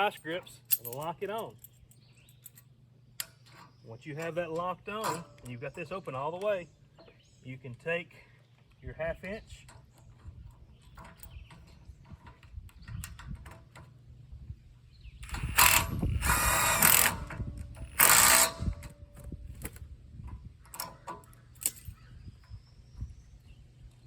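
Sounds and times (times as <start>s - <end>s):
ratchet wrench clicking: 15.2s - 18.7s.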